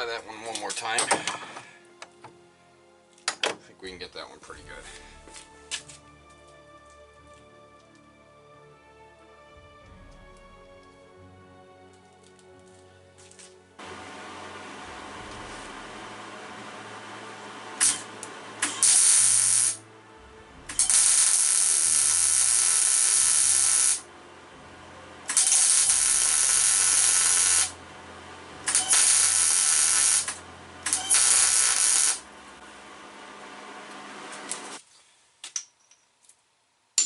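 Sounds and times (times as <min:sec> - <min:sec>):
arc welder sputtering and crackling: 0:13.3 - 0:34.8.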